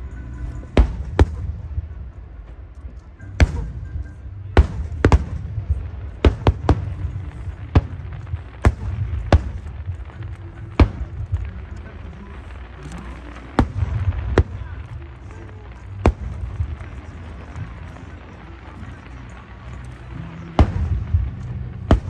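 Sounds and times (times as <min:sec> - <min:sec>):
low rumble: 0:00.0 - 0:22.0.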